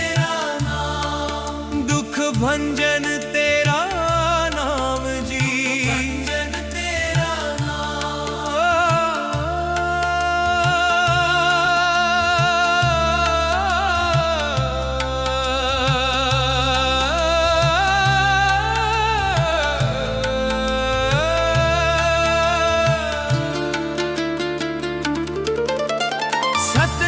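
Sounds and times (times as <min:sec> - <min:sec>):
devotional melody: 0:00.0 - 0:27.0
low drum beat: 0:26.8 - 0:27.0.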